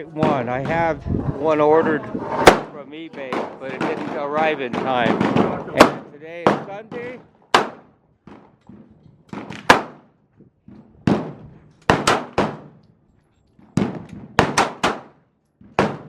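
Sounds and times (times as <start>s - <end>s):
gunshots with echo: 2.4s - 7.9s, 9.4s - 10.1s, 11.0s - 12.8s, 13.8s - 15.2s.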